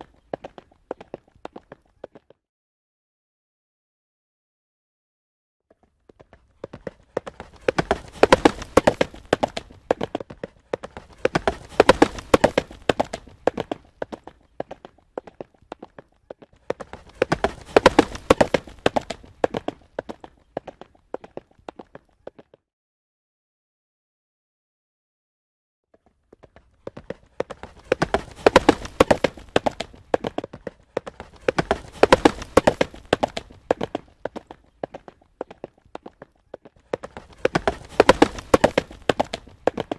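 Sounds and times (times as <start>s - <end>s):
horse hoofbeats galloping: 0.0s - 2.4s, 5.7s - 22.6s, 25.9s - 39.9s.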